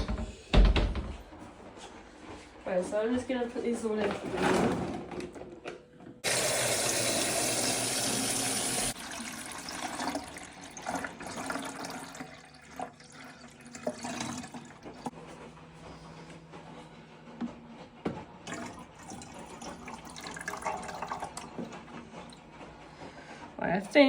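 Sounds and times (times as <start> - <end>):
tap running hard: 6.2 - 12.2
water pouring into tank: 6.2 - 15.1, 18.5 - 21.6.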